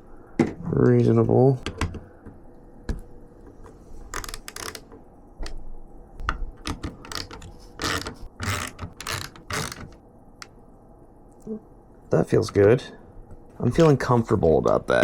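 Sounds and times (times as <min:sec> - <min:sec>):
screw threads scraping and grinding: 0:04.0 - 0:04.9, 0:06.7 - 0:10.0
screwdriver clicking: 0:06.6 - 0:10.0.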